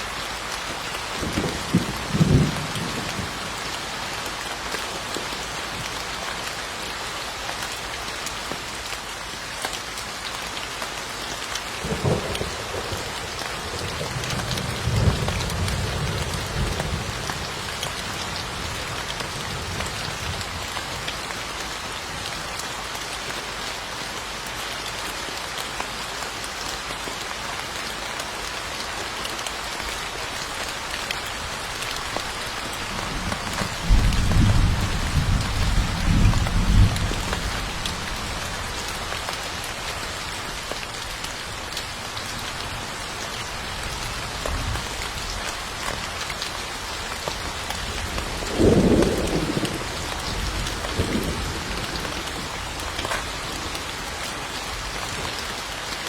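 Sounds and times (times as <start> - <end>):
steady rain falling: 0.0 - 56.0
thunder rumbles: 1.1 - 3.6, 11.8 - 20.7, 32.8 - 39.0, 47.9 - 53.7.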